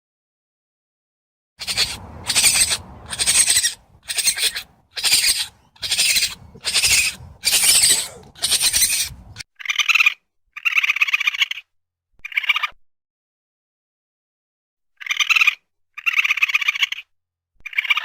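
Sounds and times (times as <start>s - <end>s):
higher-pitched chittering call: 1.6s - 9.4s
raccoon raspy bursts: 1.6s - 9.4s.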